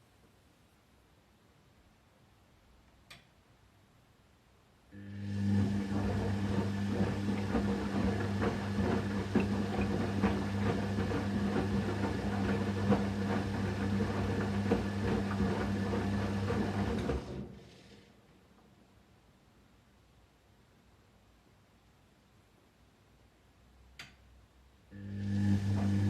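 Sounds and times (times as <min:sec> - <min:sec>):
washing machine motor hum: 0:05.0 - 0:17.8, 0:24.9 - 0:26.0.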